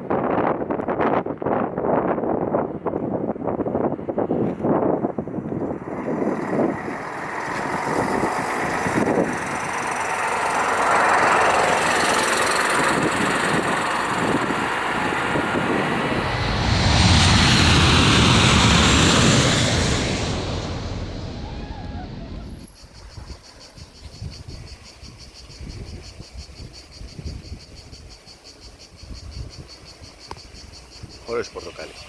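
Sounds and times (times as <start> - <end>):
jet airliner roaring overhead: 2.7 - 26.1.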